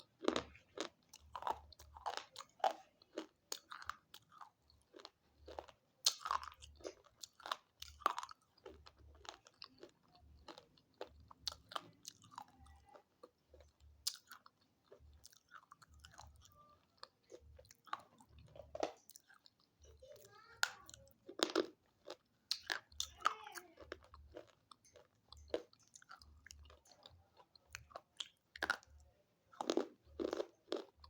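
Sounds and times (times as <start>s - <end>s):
soft grinding chews: 0.0s - 31.0s
person crunching brittle pieces: 0.1s - 13.0s, 20.6s - 31.0s.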